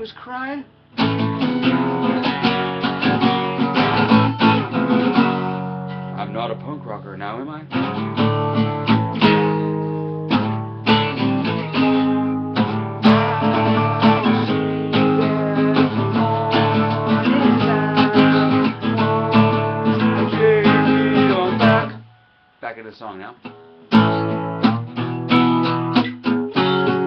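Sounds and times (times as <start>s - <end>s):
acoustic guitar strumming chords: 0.0s - 27.0s.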